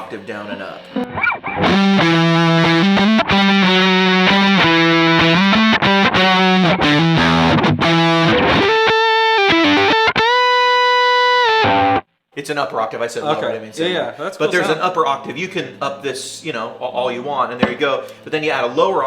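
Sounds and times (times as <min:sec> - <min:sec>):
distorted electric guitar: 0:00.0 - 0:12.1.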